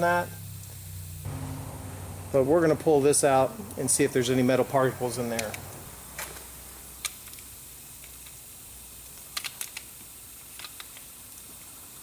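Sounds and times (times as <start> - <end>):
low hiss: 0.0 - 12.0
clicks and taps of tools: 5.3 - 6.4.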